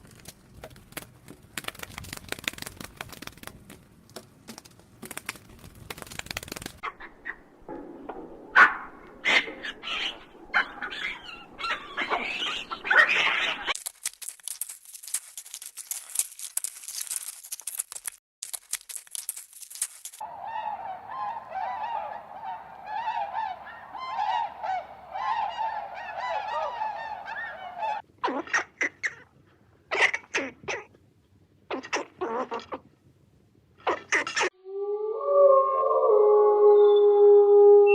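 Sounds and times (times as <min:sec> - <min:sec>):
geese honking: 0:20.2 - 0:28.0.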